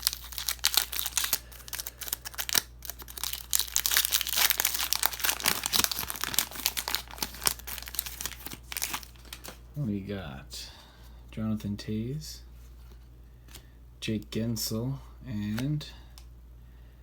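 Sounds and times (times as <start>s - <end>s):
wrapper tearing and crinkling: 0.0s - 9.6s.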